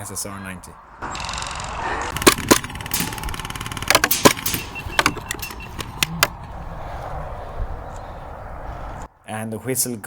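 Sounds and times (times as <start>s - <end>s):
full-auto airsoft rattle: 1.2s - 6.2s
airsoft gun single shots: 2.1s - 5.9s.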